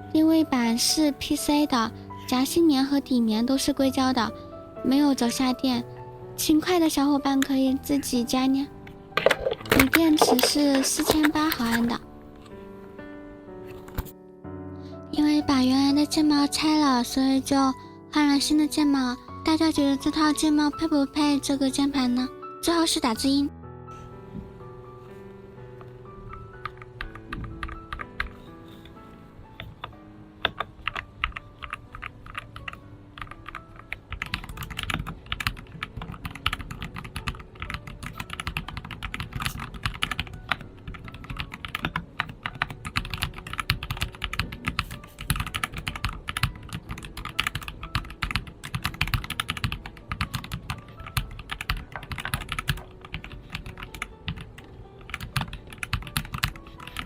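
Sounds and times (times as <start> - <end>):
soft background music: 0.0 - 57.0
mechanical keyboard key clacks: 9.2 - 11.9.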